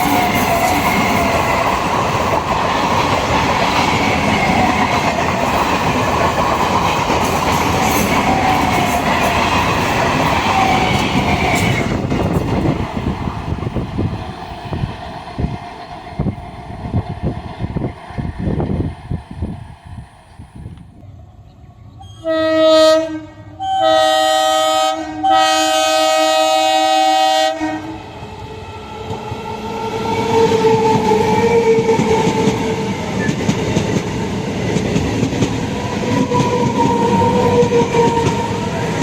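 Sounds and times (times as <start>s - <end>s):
train wheels rumbling on rails: 0.0s - 21.2s, 28.0s - 39.0s
train horn blasts: 22.0s - 28.1s, 36.0s - 39.0s.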